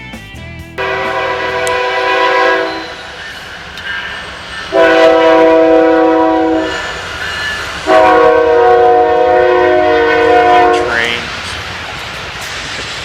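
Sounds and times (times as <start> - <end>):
multi-note horn blasts: 0.8 - 3.0, 4.7 - 6.9, 7.8 - 11.2.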